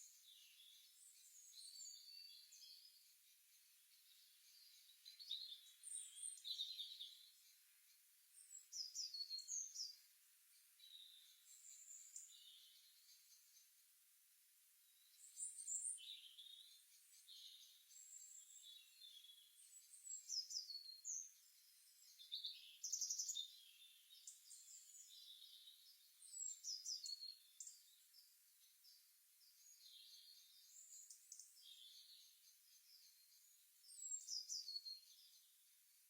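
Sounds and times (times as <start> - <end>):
songbirds chirping and singing: 0.0 - 13.9, 14.8 - 36.0.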